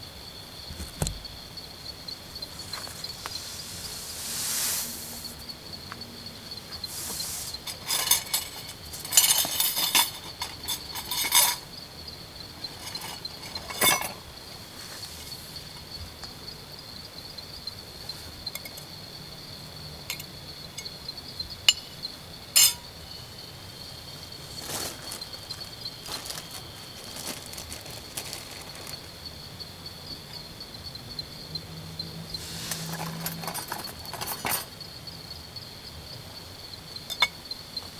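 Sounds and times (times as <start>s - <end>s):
insect chirring: 0.0s - 9.3s, 10.1s - 37.9s
cookware clinking and rattling: 7.7s - 11.6s, 12.7s - 14.2s, 32.8s - 34.7s.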